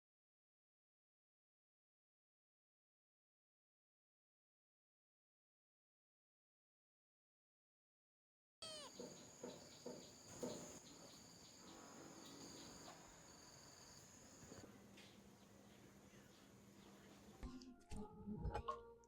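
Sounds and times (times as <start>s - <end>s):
insects chirring: 8.6s - 17.4s.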